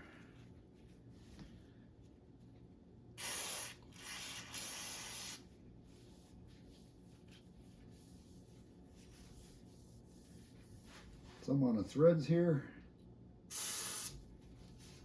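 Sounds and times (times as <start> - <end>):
aerosol can spraying: 3.2 - 5.5, 13.5 - 14.2.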